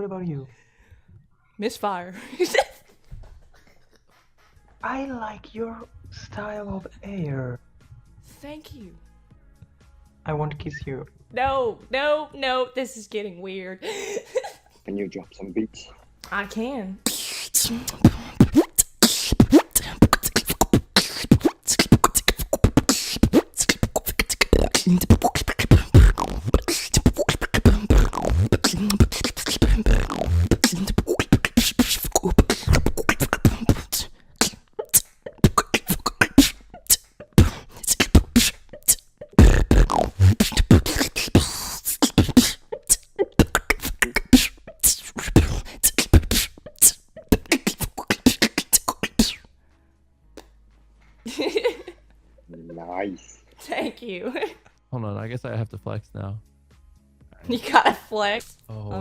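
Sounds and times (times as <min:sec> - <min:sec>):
person beatboxing: 0:17.0 - 0:49.5.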